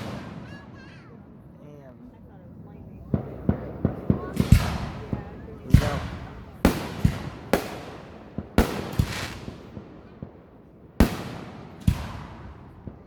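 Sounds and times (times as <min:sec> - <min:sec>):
fireworks banging: 0:00.0 - 0:01.5, 0:02.1 - 0:13.0
small firework pops: 0:03.1 - 0:10.4, 0:11.0 - 0:13.0.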